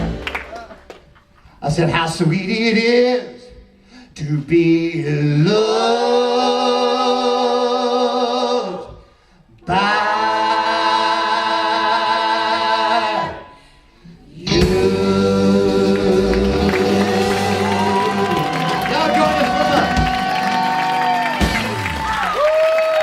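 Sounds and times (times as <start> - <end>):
singers holding harmony: 9.6 - 23.0.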